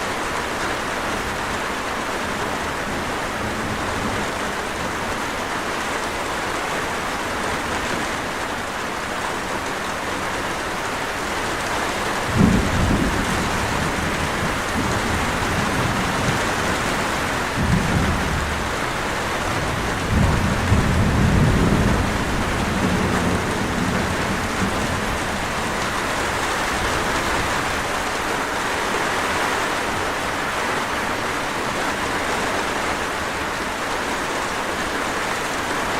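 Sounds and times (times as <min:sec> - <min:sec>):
steady rain falling: 0:00.0 - 0:35.9
rolling thunder: 0:12.1 - 0:28.1.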